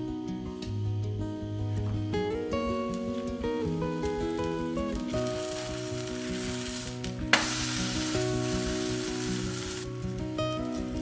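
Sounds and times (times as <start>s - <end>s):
flatbreads sizzling in a pan: 3.1s - 11.0s.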